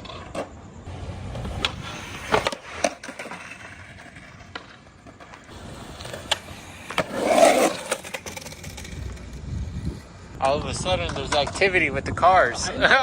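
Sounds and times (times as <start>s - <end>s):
skateboard clacks: 0.0s - 9.4s
skateboard wheels rumbling on concrete: 0.0s - 13.0s.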